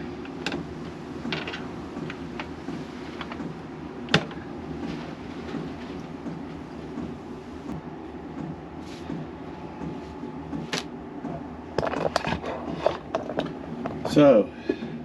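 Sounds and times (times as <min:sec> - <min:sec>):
low workshop hum: 0:00.0 - 0:15.0
engine parts knocking: 0:00.2 - 0:04.4.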